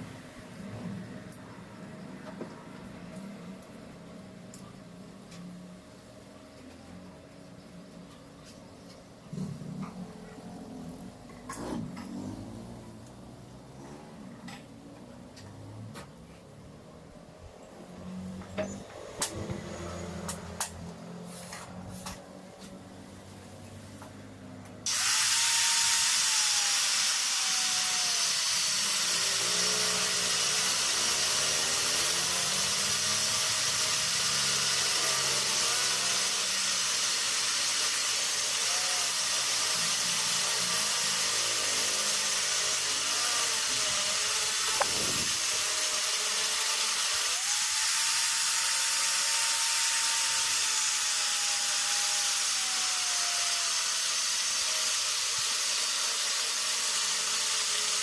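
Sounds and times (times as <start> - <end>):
welding arc hissing: 24.9 - 58.0.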